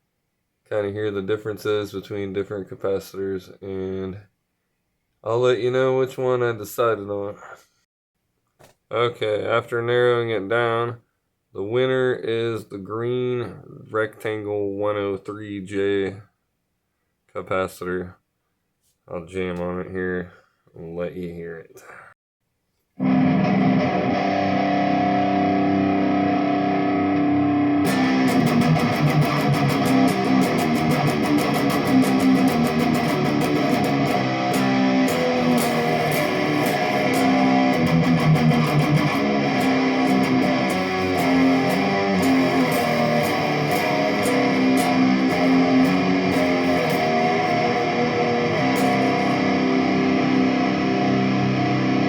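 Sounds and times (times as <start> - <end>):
electric guitar riff: 23.0 - 52.0.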